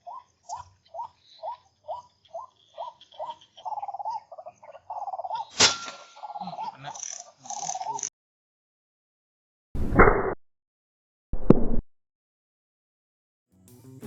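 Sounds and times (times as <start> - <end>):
animal chirping and trilling: 0.0 - 8.1.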